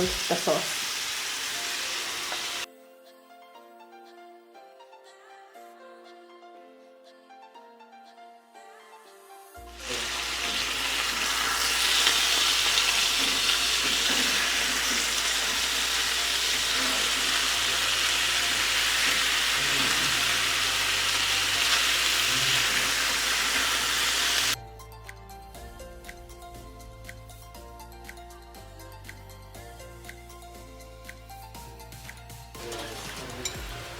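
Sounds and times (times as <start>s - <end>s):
chicken sizzling in oil: 0.0s - 2.7s, 9.7s - 24.6s, 32.6s - 33.9s
soft background music: 0.0s - 33.9s.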